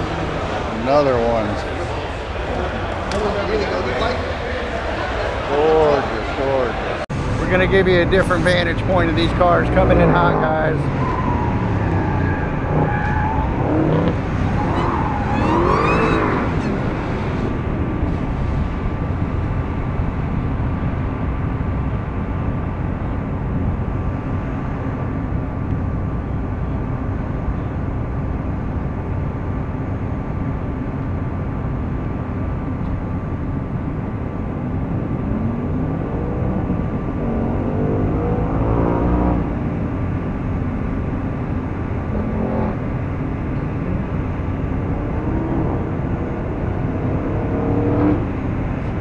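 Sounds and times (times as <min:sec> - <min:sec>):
car engines revving: 0:00.0 - 0:49.0.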